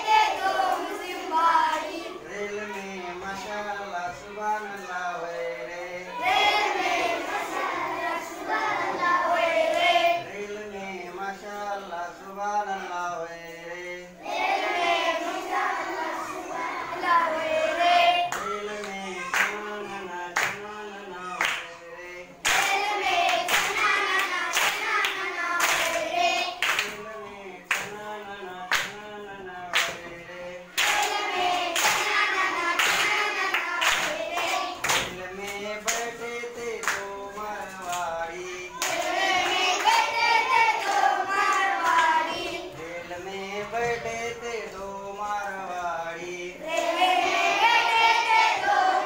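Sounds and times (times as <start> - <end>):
children singing in unison: 0.0 - 13.0, 13.8 - 49.0
hands clapping: 18.3 - 19.6, 20.4 - 20.7, 21.4 - 21.7, 22.4 - 27.0, 27.7 - 28.0, 29.7 - 30.0, 30.8 - 36.1, 36.8 - 38.1, 38.8 - 40.1.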